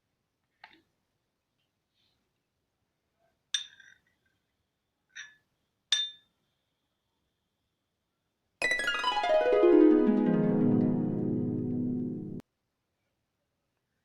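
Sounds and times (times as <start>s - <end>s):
music: 8.6s - 12.4s.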